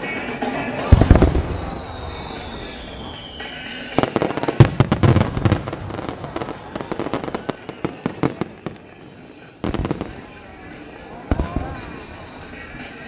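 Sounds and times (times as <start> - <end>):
firework shell bursts crackling: 0.9 - 9.0
falling firework whistle: 1.0 - 5.6.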